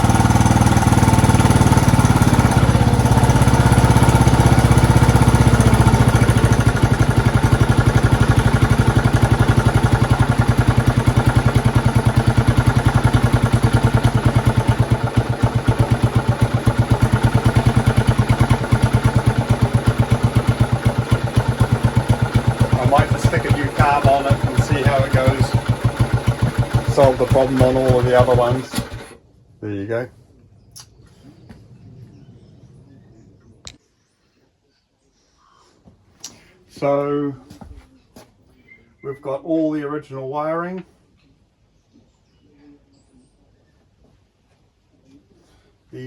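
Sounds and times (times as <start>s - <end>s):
motorcycle engine idling: 0.0s - 29.2s.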